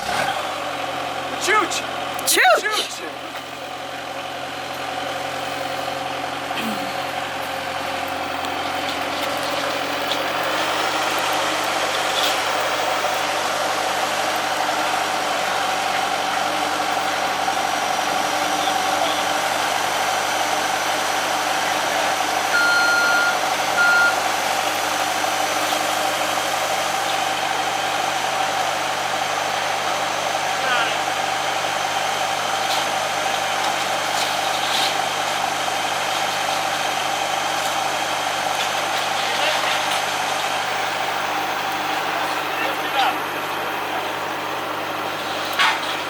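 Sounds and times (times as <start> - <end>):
skid steer engine running: 0.0 - 46.0
machine beeps: 22.6 - 24.2.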